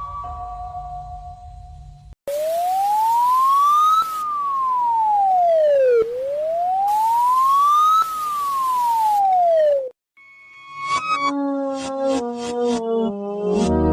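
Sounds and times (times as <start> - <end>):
steady hiss: 2.3 - 9.5
wailing alarm siren: 2.3 - 10.0.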